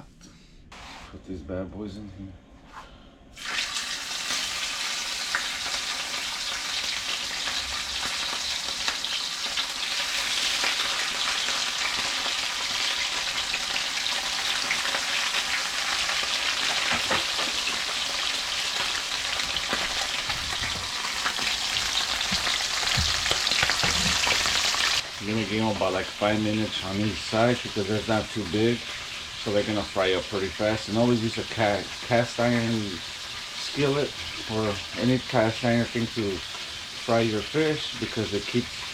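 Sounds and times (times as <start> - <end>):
oil popping and crackling: 3.4 - 26.4
fish sizzling in hot oil: 3.4 - 38.9.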